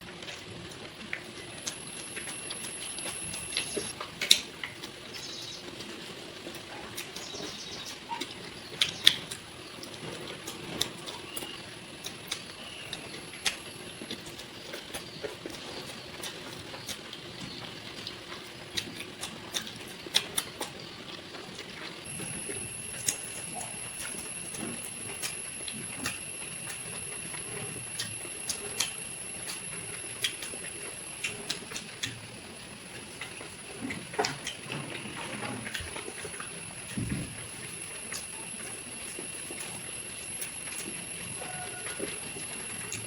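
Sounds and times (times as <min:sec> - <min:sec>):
steady hiss: 0:01.3 - 0:04.0, 0:22.1 - 0:43.0
wet chewing and lip smacks: 0:18.7 - 0:20.7, 0:22.1 - 0:43.0.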